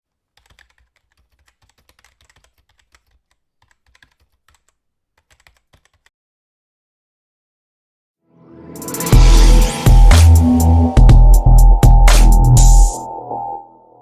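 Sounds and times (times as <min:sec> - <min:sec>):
faint rapid clicking: 0:00.4 - 0:06.1.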